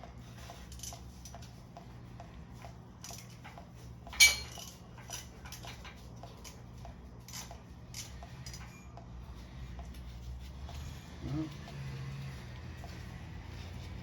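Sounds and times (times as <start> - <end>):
hand tools clinking on metal: 3.0 - 8.8
ringing metallic clank: 4.2 - 4.7.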